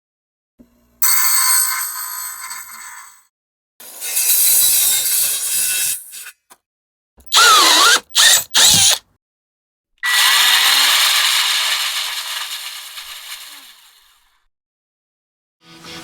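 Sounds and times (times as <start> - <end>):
electric power drill running: 7.3 - 9.0, 10.0 - 14.0.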